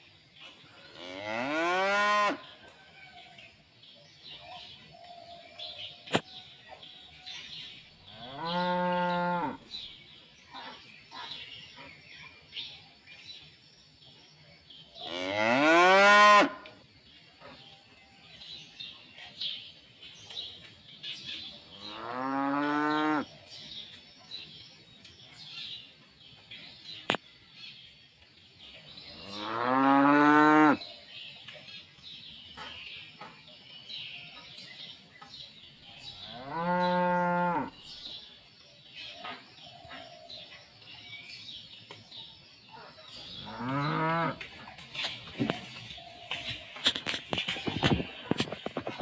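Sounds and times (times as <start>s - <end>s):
cows mooing: 29.2s - 30.8s, 36.3s - 37.7s.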